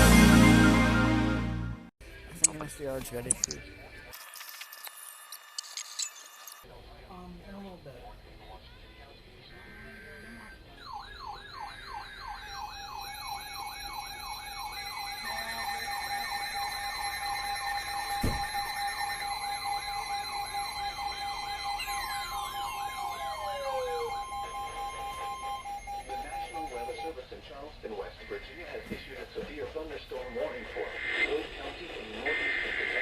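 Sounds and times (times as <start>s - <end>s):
electronic siren wailing: 10.1s - 27.1s
falling electronic tones: 11.3s - 27.1s.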